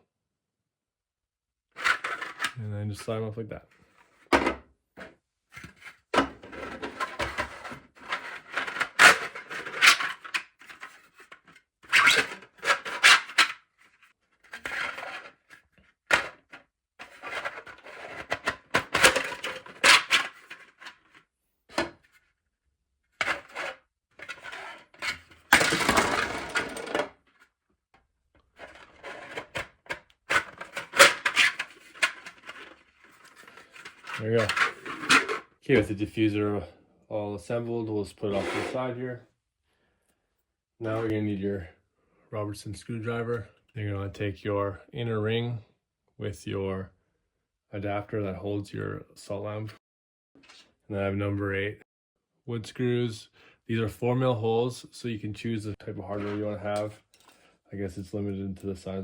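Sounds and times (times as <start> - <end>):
plastic scraping rustle: 28.5 - 35.5.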